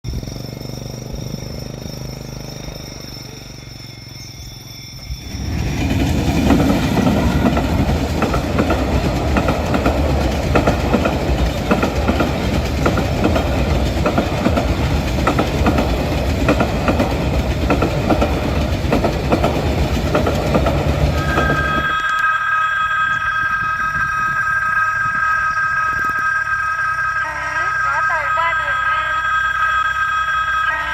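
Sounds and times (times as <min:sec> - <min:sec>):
train rumble: 0:00.0 - 0:30.9
wheels clacking over rail joints: 0:05.2 - 0:21.9
high train horn tone: 0:21.1 - 0:30.9.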